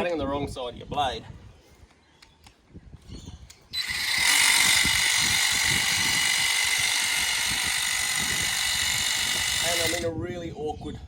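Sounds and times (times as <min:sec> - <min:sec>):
hedge trimmer whining: 0:03.8 - 0:10.1.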